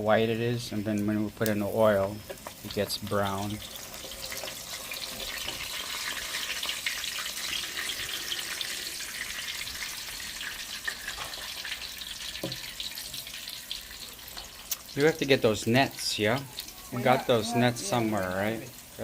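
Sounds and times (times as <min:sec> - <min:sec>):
fish sizzling in hot oil: 0:00.9 - 0:19.0.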